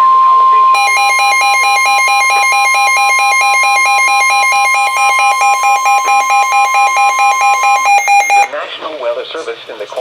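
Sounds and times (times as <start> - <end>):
shrill warbling alert alarm: 0.8 - 8.5
steady warning alarm tone: 0.8 - 8.5.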